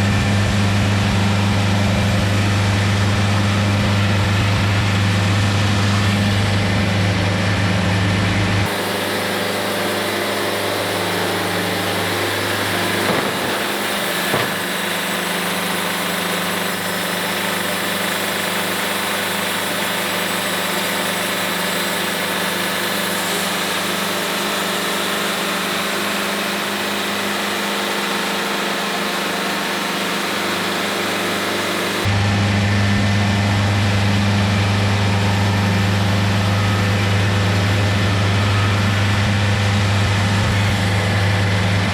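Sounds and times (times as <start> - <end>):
sawmill engine running: 0.0 - 41.9
short knocks: 12.6 - 15.0.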